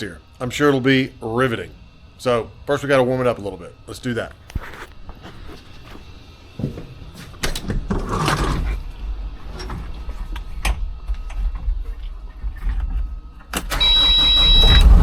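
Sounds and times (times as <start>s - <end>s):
cab door and controls clunking: 12.6s - 15.0s
diesel engine starting and idling: 13.4s - 15.0s.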